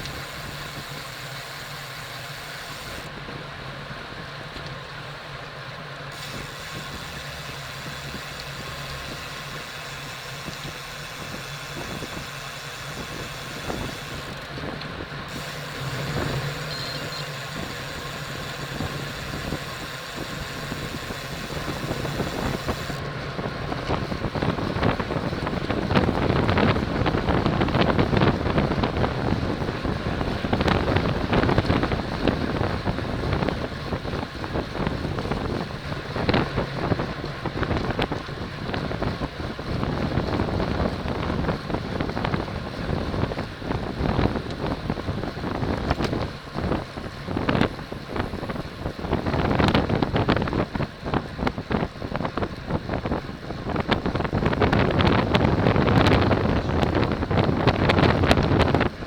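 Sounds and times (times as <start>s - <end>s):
bicycle road noise: 0.0s - 59.0s
wind rushing over microphone: 6.3s - 59.0s.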